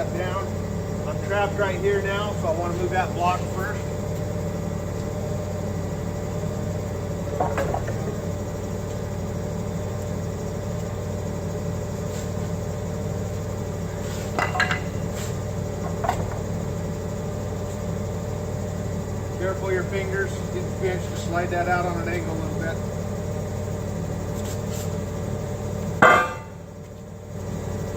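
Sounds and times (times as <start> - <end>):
forklift engine idling: 0.0 - 27.9
metallic clanks and knocks: 7.4 - 8.1, 14.3 - 15.0, 15.8 - 16.4, 26.0 - 26.6.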